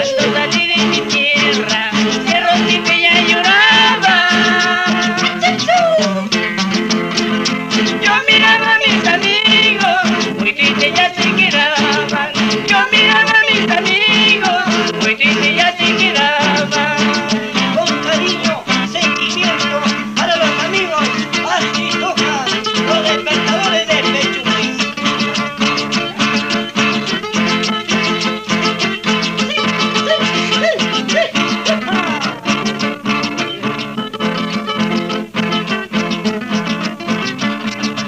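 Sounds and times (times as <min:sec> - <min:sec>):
folk band music: 0:00.0 - 0:38.0
plucked guitar strings: 0:00.0 - 0:38.0
steady beat: 0:16.7 - 0:38.0.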